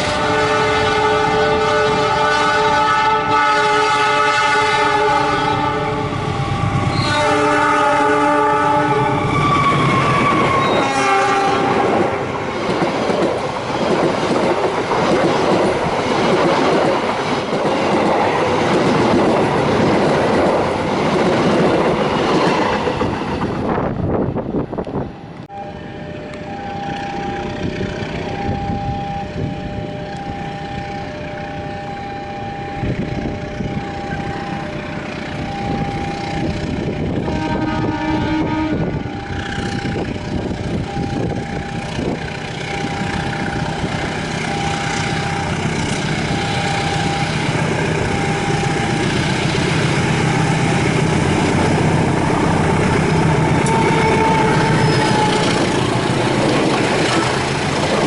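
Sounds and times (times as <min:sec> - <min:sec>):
locomotive horn blasts: 0:00.0 - 0:12.4, 0:28.3 - 0:55.9
train rumbling and clattering: 0:00.0 - 0:25.6, 0:26.2 - 0:58.0
level-crossing warning tone: 0:00.0 - 0:58.0.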